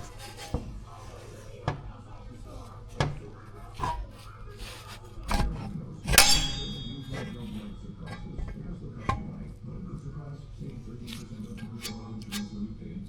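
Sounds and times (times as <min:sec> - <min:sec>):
metal tools knocking and clanging: 0:02.6 - 0:09.6.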